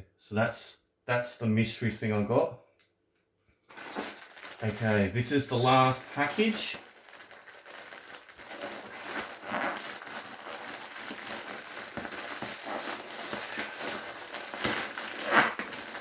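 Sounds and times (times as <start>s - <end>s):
package wrapping crinkling: 3.6s - 16.0s.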